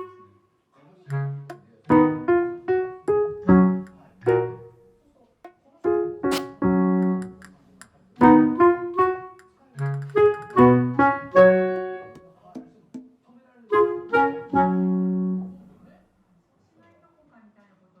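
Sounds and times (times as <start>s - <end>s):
slow piano melody: 0.0s - 0.3s, 1.1s - 4.9s, 5.9s - 7.5s, 8.2s - 12.2s, 13.7s - 15.8s.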